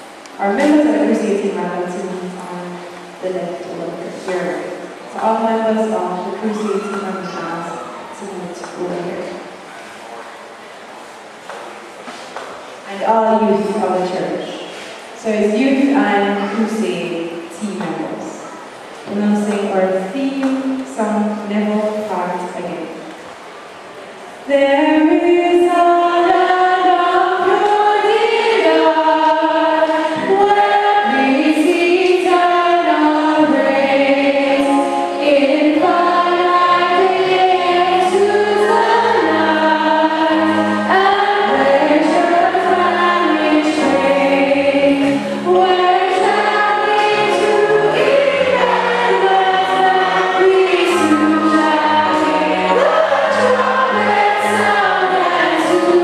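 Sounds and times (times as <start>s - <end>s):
group singing a gospel hymn: 25.7s - 56.0s.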